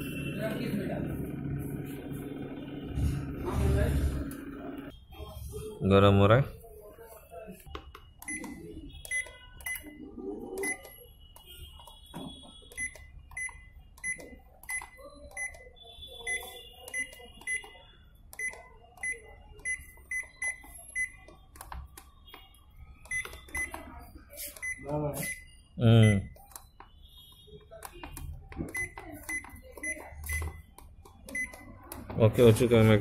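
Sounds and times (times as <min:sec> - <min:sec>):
microwave oven humming: 0:00.0 - 0:04.9
high electronic beeps: 0:08.0 - 0:33.0.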